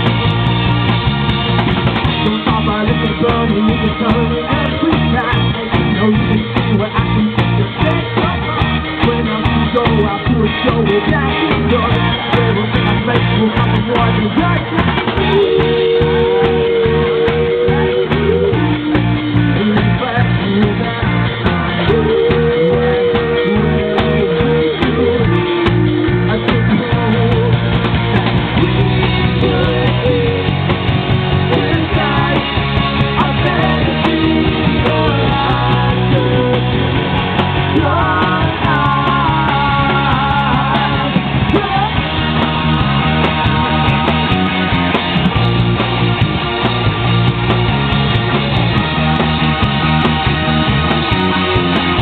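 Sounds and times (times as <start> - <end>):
live rock band playing: 0.0 - 52.0.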